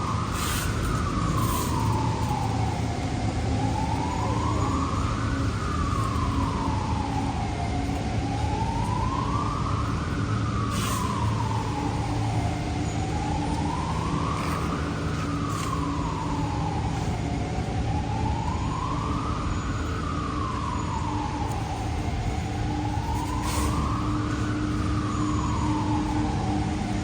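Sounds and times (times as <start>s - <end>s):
siren wailing: 0.0s - 27.0s.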